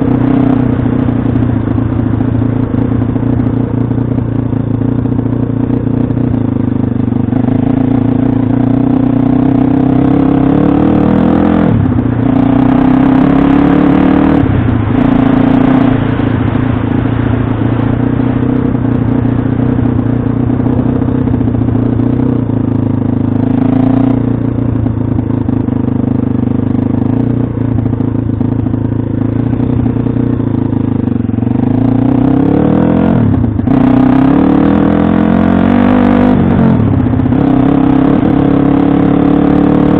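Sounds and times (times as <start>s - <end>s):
pit bike engine revving: 7.2s - 24.4s, 29.2s - 39.9s.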